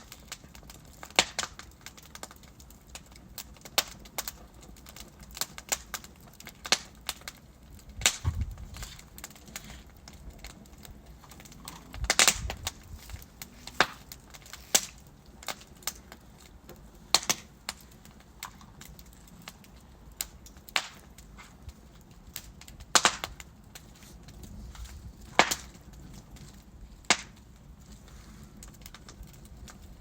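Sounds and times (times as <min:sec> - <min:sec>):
logs crackling in a fireplace: 0:00.0 - 0:30.0.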